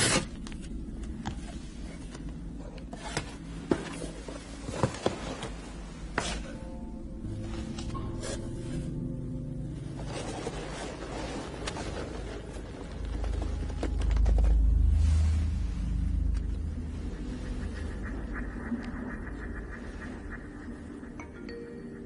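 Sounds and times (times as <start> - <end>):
deep rumble: 4.2 - 21.4
crackling noise with clicks: 11.4 - 15.0, 15.9 - 21.1.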